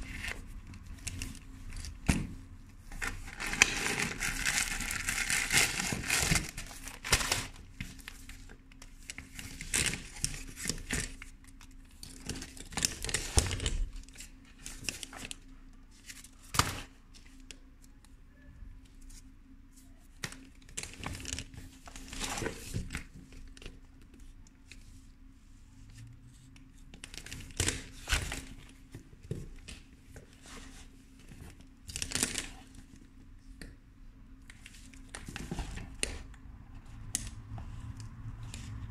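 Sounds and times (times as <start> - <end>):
packaging crinkling and rustling: 0.0 - 17.6, 27.0 - 33.0
faint steady hum: 0.0 - 38.9.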